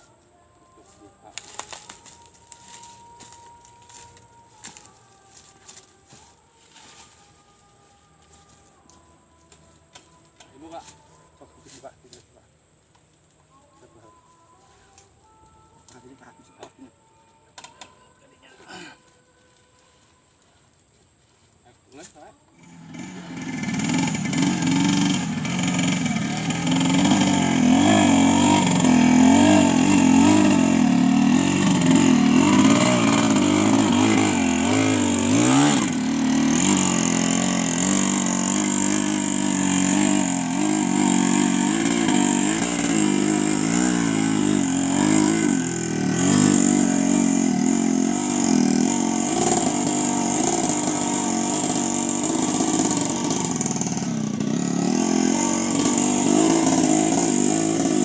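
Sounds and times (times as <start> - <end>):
motorcycle engine under load: 22.5 - 58.0.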